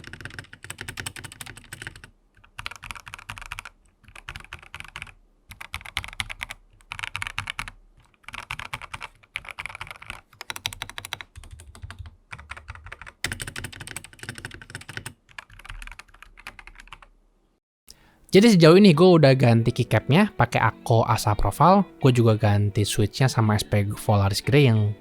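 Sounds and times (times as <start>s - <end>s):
mechanical keyboard typing: 0.0s - 17.1s.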